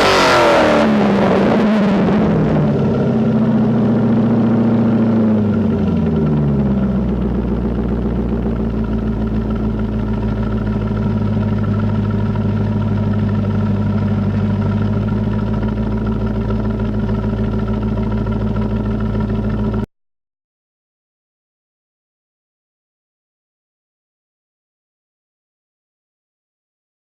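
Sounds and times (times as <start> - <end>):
car engine running: 0.0 - 19.9.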